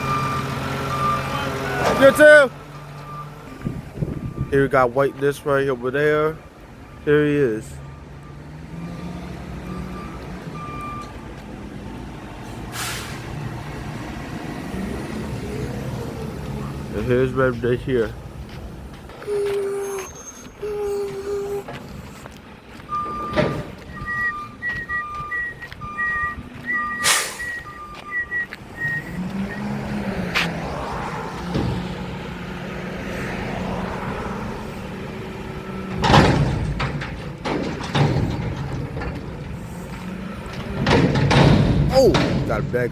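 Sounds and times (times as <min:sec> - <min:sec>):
garbage truck diesel engine rumbling: 0:00.0 - 0:42.9
air brake hiss: 0:12.7 - 0:13.3, 0:27.0 - 0:27.6
short beep: 0:22.9 - 0:29.1
loud metallic bang: 0:27.0 - 0:27.6, 0:35.7 - 0:39.8, 0:40.6 - 0:42.9.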